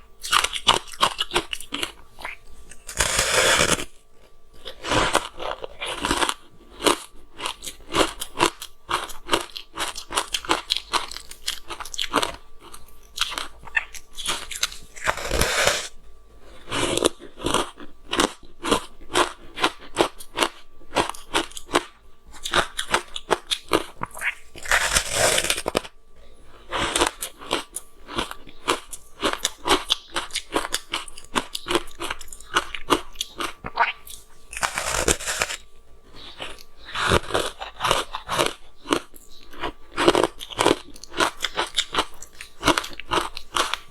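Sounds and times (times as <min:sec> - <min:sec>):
crunchy chewing of ice: 0:00.0 - 0:43.9.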